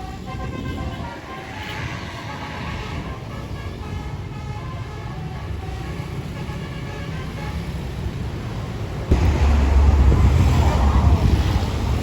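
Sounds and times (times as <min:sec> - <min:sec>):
vehicle horn: 0:00.0 - 0:07.6
bus engine rumble: 0:00.0 - 0:12.0
traffic: 0:00.0 - 0:12.0
wind buffeting microphone: 0:00.2 - 0:03.3, 0:09.0 - 0:12.0.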